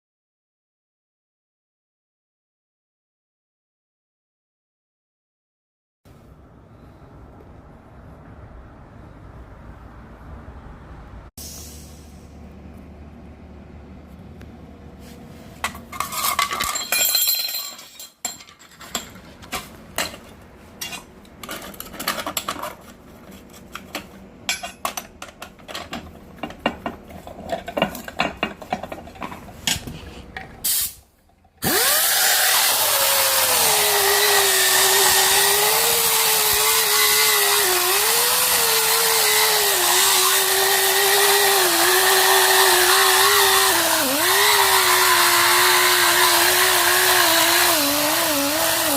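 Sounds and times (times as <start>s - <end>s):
pneumatic disc grinder whining: 31.6s - 48.9s.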